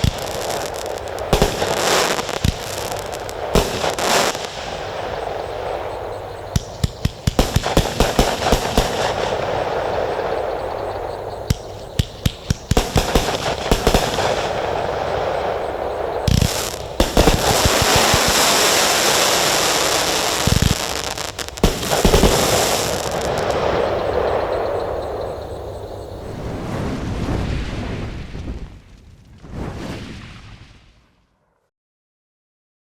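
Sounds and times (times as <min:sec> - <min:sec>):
firework shots and pops: 0:00.0 - 0:24.9
firework crackle: 0:00.0 - 0:25.4
loud firework bangs: 0:00.0 - 0:26.0.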